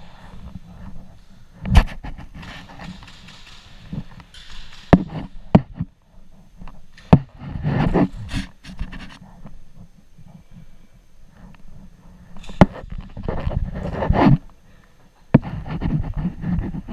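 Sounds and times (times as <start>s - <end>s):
rustling and scraping: 0.0s - 16.9s
sharp clicks and knocks: 1.6s - 5.9s, 6.6s - 9.2s.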